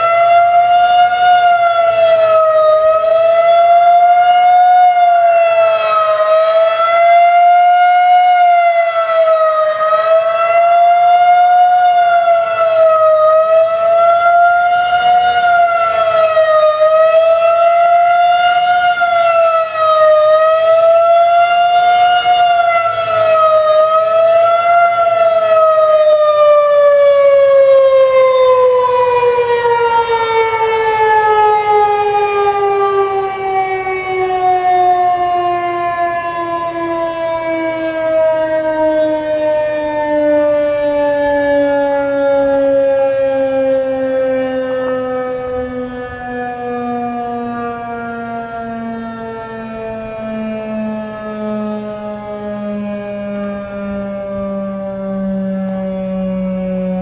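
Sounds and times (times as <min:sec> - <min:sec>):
warning siren wailing: 0:00.0 - 0:57.0.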